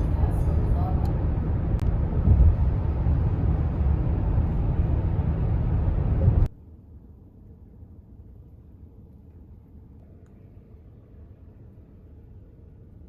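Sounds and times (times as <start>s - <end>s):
loud low rumbling: 0.0s - 6.5s.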